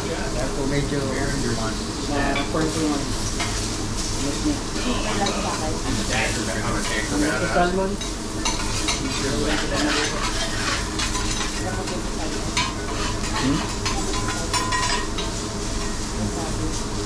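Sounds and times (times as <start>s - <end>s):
fish sizzling on a griddle: 0.0s - 17.0s
metal spatulas scraping and tapping: 8.0s - 12.0s, 12.6s - 15.9s.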